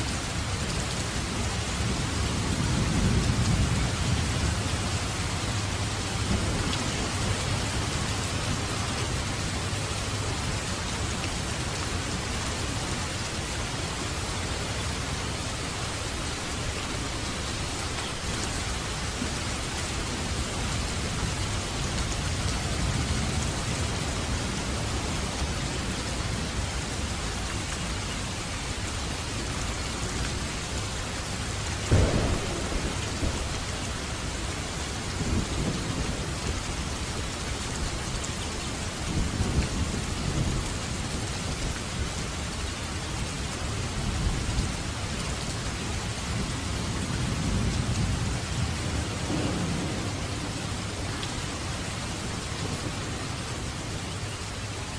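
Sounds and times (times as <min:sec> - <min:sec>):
heavy rain: 0:00.0 - 0:54.9
low rolling thunder: 0:00.3 - 0:13.0, 0:31.8 - 0:42.2, 0:45.9 - 0:53.9.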